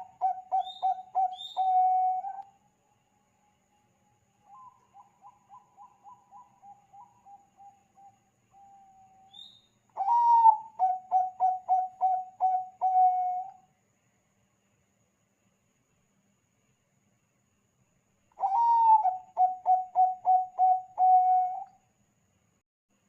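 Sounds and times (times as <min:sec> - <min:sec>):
dove cooing: 0:00.0 - 0:02.4, 0:04.5 - 0:09.2, 0:10.0 - 0:13.5, 0:18.4 - 0:21.7.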